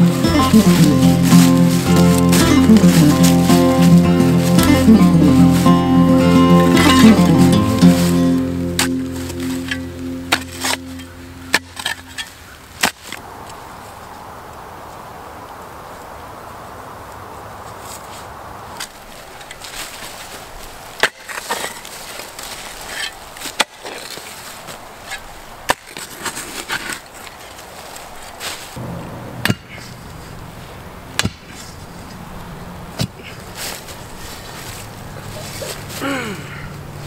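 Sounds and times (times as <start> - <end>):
gritty scraping of soil: 0.0 - 13.2, 17.8 - 28.8, 31.5 - 36.0
hand tool striking ground: 0.0 - 13.2, 21.0 - 21.9, 22.9 - 24.3.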